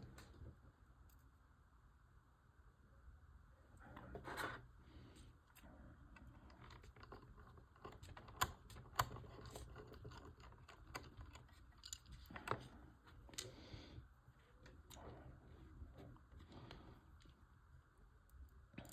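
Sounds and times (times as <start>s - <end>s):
small plastic parts clicking: 6.5s - 12.7s.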